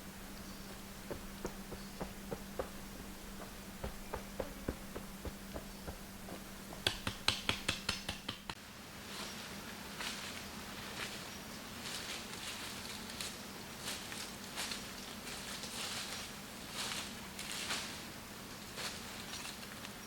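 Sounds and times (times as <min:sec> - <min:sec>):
light knocks: 0:00.0 - 0:08.6
sharp clicks: 0:00.8 - 0:08.6.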